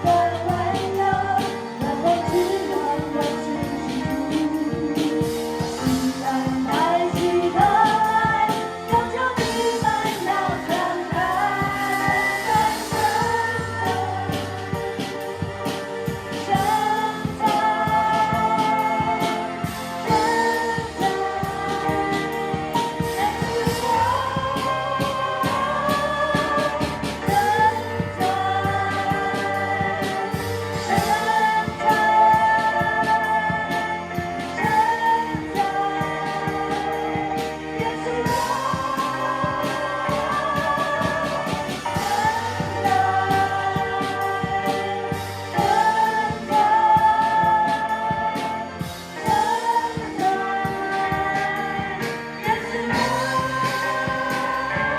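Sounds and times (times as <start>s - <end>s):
person singing wordless melody: 0.0s - 54.9s
sustained keyboard chords: 0.0s - 54.9s
steady beat: 4.1s - 54.9s.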